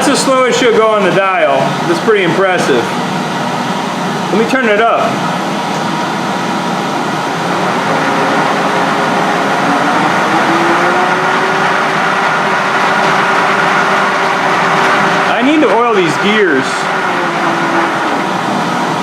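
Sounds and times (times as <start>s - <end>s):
lathe gears whirring: 0.0s - 19.0s
tone climbing in pitch: 7.4s - 14.5s.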